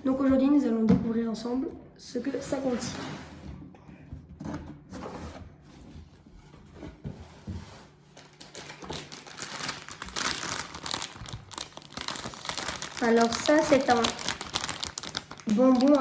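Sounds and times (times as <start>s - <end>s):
wrapping crinkling: 8.0s - 16.0s.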